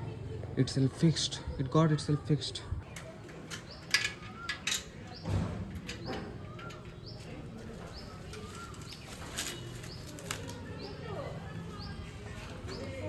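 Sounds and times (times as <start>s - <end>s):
bird calling: 3.5s - 12.0s.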